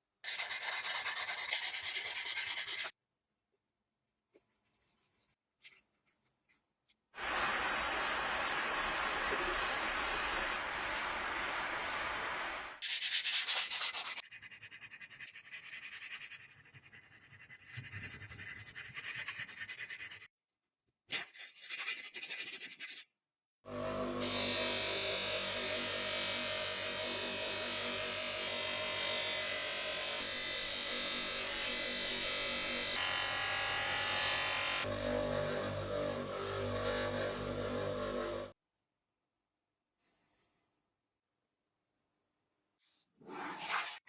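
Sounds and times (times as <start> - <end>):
rubbing and scraping: 0.3 - 3.0.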